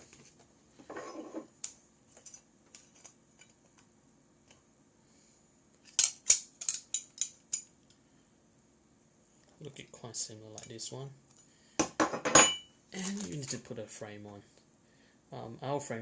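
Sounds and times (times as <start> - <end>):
small parts clicking and tapping: 5.8 - 8.0.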